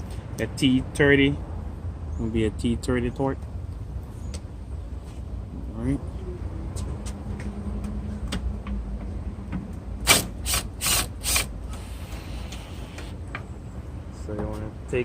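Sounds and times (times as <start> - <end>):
loud ratcheting strokes: 10.0 - 12.0.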